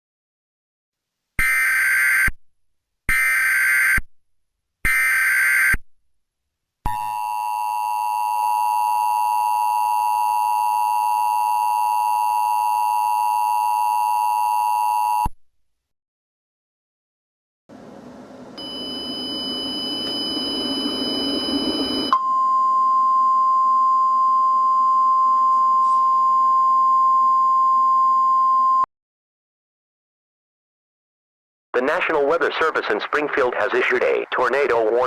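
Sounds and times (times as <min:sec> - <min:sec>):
data tone bursts: 0:18.6 - 0:23.7
steady attention signal tone: 0:18.6 - 0:28.8.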